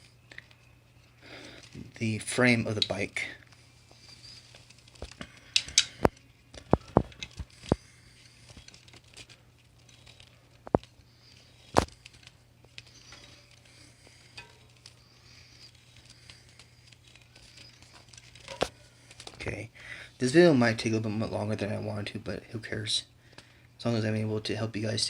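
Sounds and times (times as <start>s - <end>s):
hands handling small objects: 0.0s - 19.4s.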